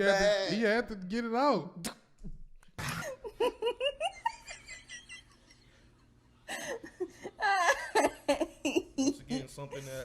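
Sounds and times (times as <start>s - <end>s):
person laughing: 2.8s - 5.5s, 6.5s - 10.0s.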